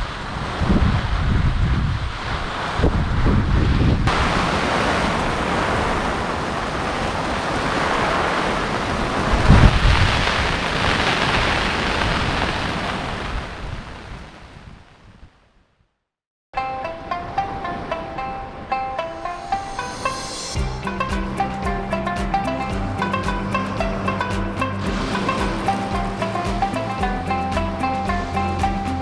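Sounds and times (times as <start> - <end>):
surf on a beach: 0.0 - 14.8, 17.0 - 29.0
wind buffeting microphone: 0.4 - 15.3.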